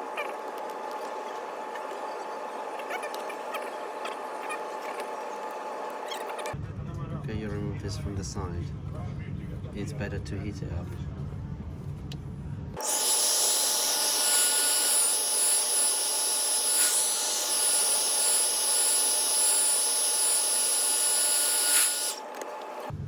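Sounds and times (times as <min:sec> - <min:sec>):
heat gun blowing with fan whine: 0:12.8 - 0:23.0.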